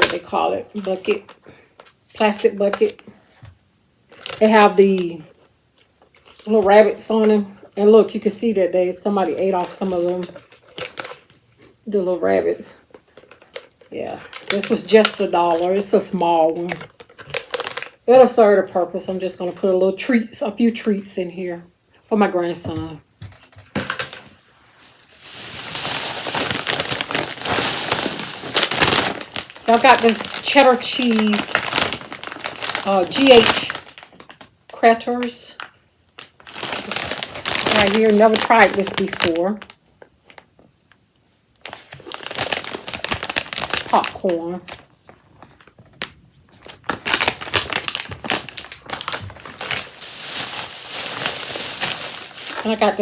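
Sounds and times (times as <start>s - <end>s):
plastic packaging crinkling: 4.1s - 5.0s, 6.0s - 6.5s, 9.6s - 11.3s, 12.9s - 15.7s, 16.7s - 18.0s, 23.9s - 34.5s, 36.2s - 40.4s, 41.6s - 44.8s, 46.5s - 53.0s.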